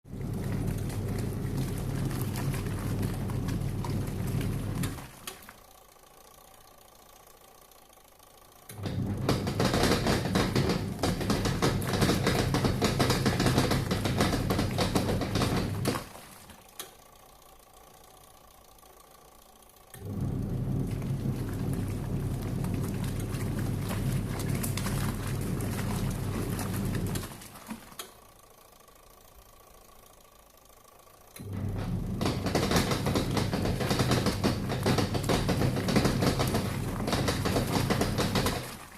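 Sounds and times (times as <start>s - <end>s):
washing machine rattling clatter: 0.0s - 5.5s, 8.7s - 16.6s, 20.0s - 28.0s, 31.4s - 38.9s
washing machine motor hum: 0.0s - 38.9s
fast rattling clatter: 8.8s - 16.1s, 32.2s - 38.8s.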